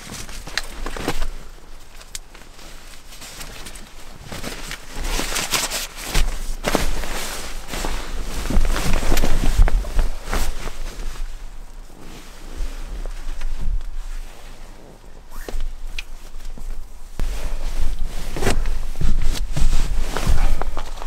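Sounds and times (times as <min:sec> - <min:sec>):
rustling and scraping of gear: 0:00.0 - 0:21.0.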